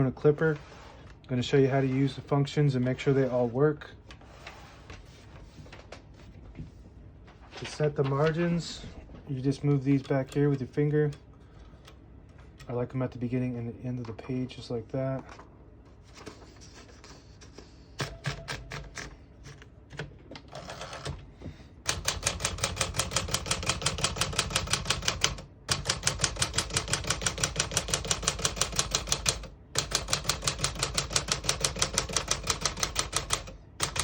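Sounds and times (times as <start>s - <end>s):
typewriter keystrokes: 18.0s - 21.2s, 21.9s - 34.0s.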